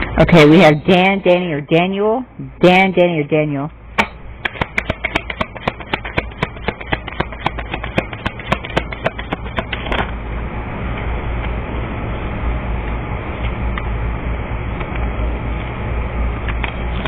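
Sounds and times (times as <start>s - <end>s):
low background hum and hiss: 0.0s - 17.0s
cards being shuffled: 4.5s - 10.0s.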